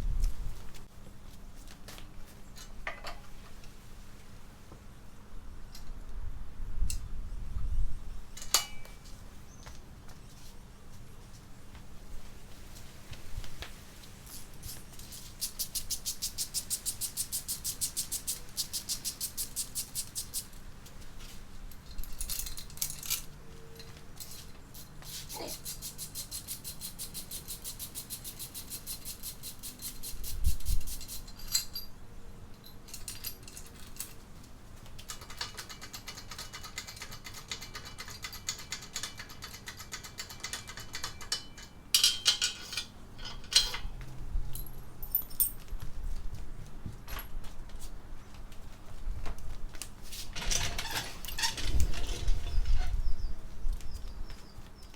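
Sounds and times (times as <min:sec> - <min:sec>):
ratchet clicking: 0:14.7 - 0:20.6, 0:25.6 - 0:31.7.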